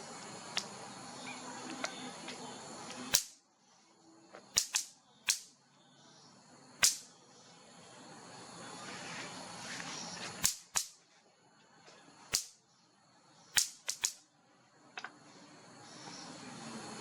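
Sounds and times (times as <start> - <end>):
low steady hiss: 0.0 - 17.0
sharp clicks: 4.6 - 5.5, 6.8 - 7.1, 10.4 - 11.0, 12.3 - 12.6, 13.5 - 14.2.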